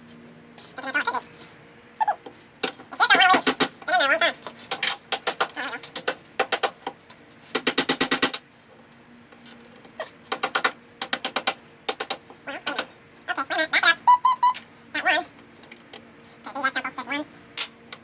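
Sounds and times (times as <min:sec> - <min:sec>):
rapid metal-on-metal strikes: 0:03.1 - 0:03.8, 0:07.5 - 0:08.4.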